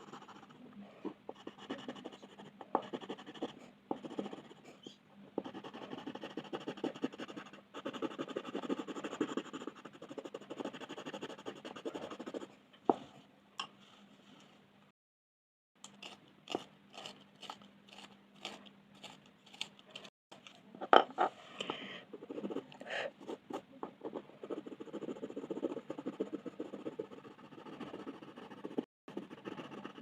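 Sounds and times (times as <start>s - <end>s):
pencil scratching on paper: 0.0s - 0.6s, 1.3s - 12.6s, 22.1s - 30.0s.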